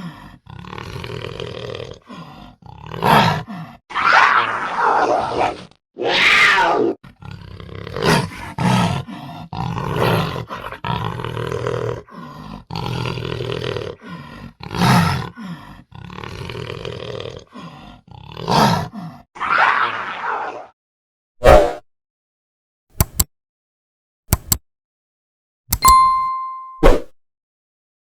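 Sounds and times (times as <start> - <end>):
panther roaring and growling: 0.0 - 20.8.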